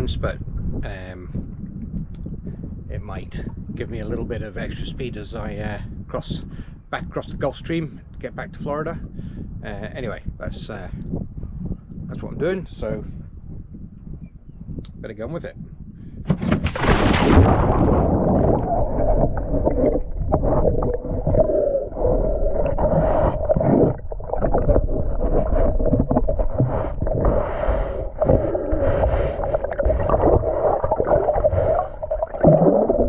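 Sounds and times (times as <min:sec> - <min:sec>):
splash into water: 0:16.4 - 0:19.6
underwater gurgling and bubbling: 0:16.6 - 0:33.0
wavering hum: 0:17.3 - 0:33.0.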